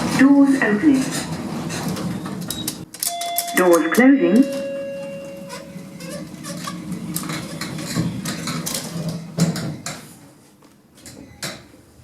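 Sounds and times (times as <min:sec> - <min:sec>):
lift doors sliding shut: 0:00.0 - 0:03.8, 0:04.4 - 0:10.0.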